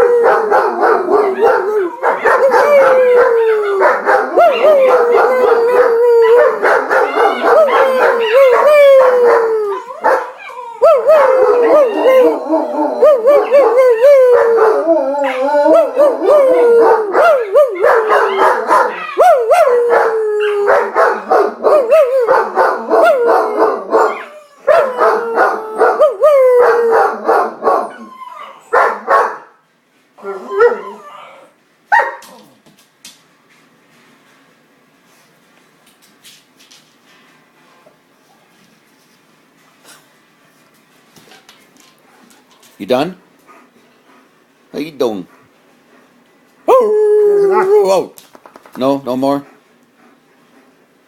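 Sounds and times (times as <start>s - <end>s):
dogs howling: 0.0s - 29.2s, 30.2s - 31.6s, 46.6s - 48.1s.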